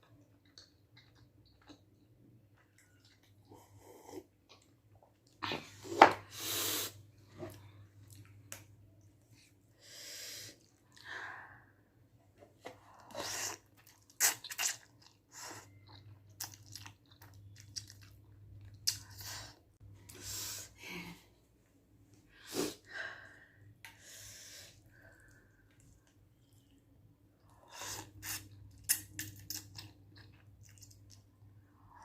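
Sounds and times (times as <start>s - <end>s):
person chewing: 0.1s - 3.9s, 13.0s - 19.6s, 28.0s - 31.3s
faint low hum: 7.0s - 32.0s.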